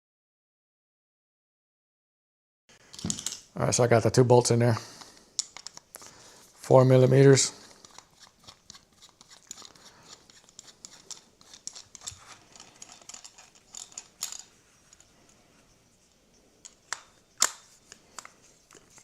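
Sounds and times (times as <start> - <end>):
metal bolts and tools clicking: 5.4 - 5.8, 9.2 - 15.4, 16.6 - 17.6.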